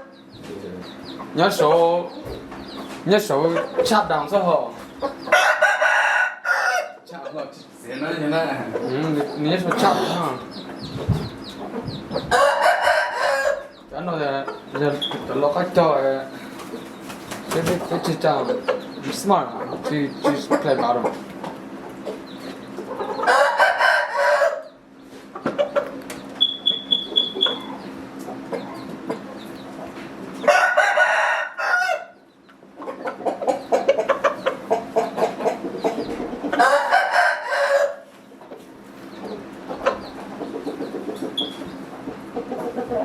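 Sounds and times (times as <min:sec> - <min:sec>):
chicken clucking: 0:00.0 - 0:43.0
roosters crowing: 0:03.5 - 0:14.8, 0:21.6 - 0:29.3, 0:30.0 - 0:32.3, 0:33.0 - 0:38.2.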